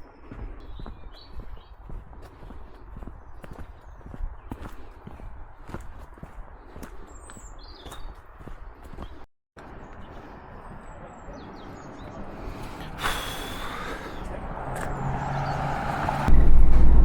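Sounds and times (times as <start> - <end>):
vehicle engine hum approaching: 9.6 - 17.0.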